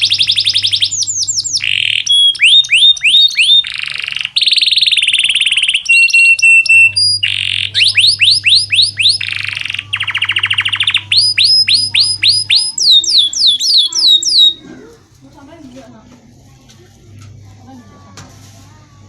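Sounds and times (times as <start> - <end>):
canary singing: 0.0 - 14.8.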